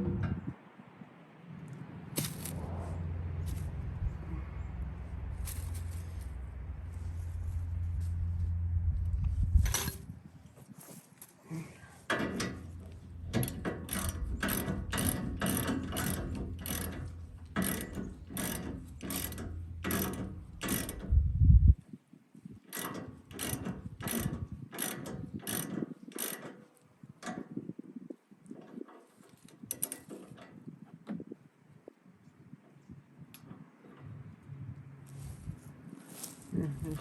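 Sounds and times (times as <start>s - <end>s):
low steady hum: 1.6s - 10.6s
ratchet wrench clicking: 12.1s - 21.2s, 22.7s - 26.6s, 29.7s - 30.1s.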